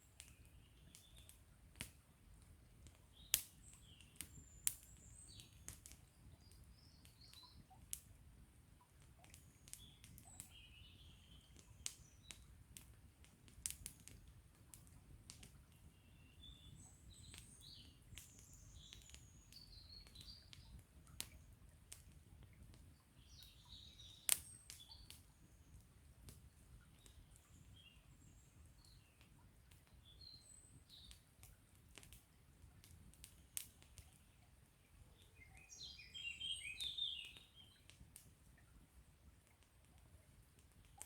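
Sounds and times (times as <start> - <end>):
small birds chirping: 0.0 - 1.9, 2.9 - 8.1, 9.2 - 12.5, 13.7 - 32.1, 33.2 - 38.0
campfire crackling and popping: 0.0 - 41.0.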